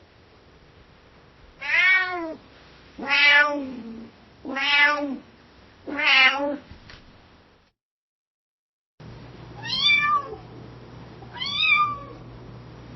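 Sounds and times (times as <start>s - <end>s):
cat meowing: 1.6s - 2.4s, 3.0s - 5.2s, 5.9s - 6.6s, 9.6s - 10.4s, 11.3s - 12.2s.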